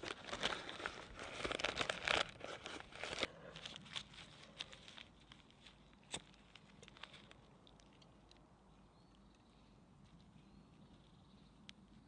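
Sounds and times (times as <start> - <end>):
crinkling and rustling handling noise: 0.0 - 12.0.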